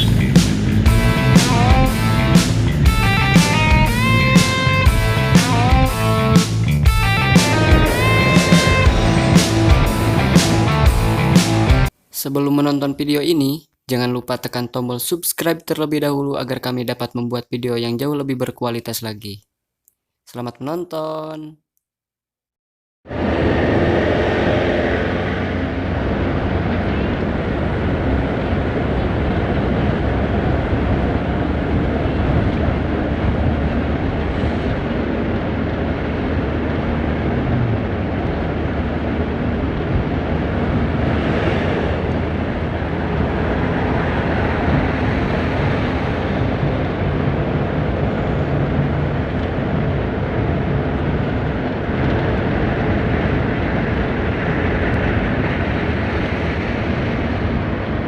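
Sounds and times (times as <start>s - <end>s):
minibus engine and road noise: 0.0s - 11.9s, 23.1s - 58.0s.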